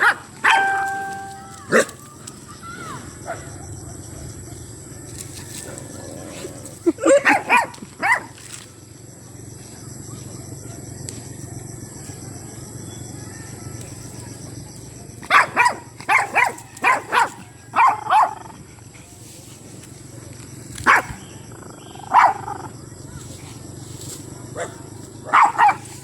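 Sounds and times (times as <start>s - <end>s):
dog barking: 0.0s - 1.9s, 7.2s - 8.3s, 15.2s - 18.5s, 20.8s - 21.2s, 22.1s - 22.7s, 24.6s - 26.0s.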